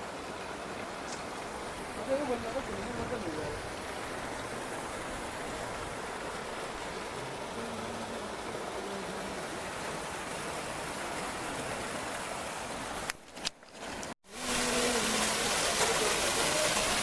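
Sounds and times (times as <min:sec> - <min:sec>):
flowing water rushing: 0:00.0 - 0:17.0.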